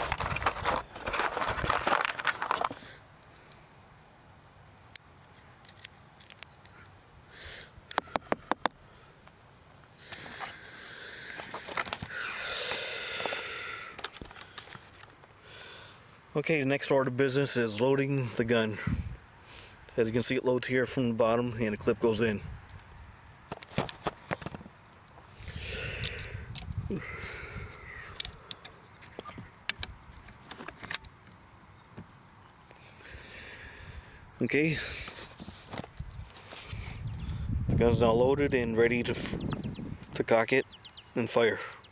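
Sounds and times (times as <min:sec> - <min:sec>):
handling noise: 0:00.0 - 0:02.8, 0:23.5 - 0:25.3, 0:28.5 - 0:32.2, 0:35.0 - 0:37.0
rustling handling noises: 0:00.0 - 0:02.8.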